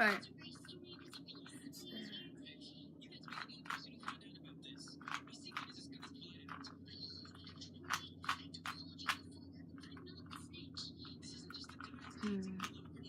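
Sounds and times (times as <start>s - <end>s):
steady low hum: 0.0s - 13.0s
puzzle cube plastic clicking: 5.0s - 9.3s.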